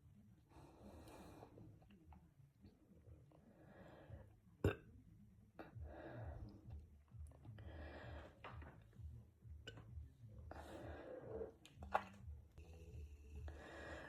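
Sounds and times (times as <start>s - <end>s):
person breathing through mouth: 12.6s - 14.0s.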